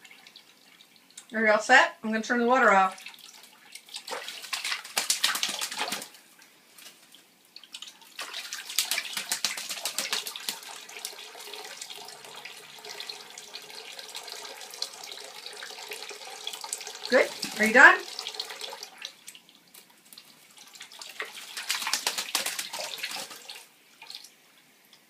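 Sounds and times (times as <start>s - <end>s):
tap water splashing into sink: 3.0s - 6.2s, 7.6s - 19.9s, 20.8s - 24.3s.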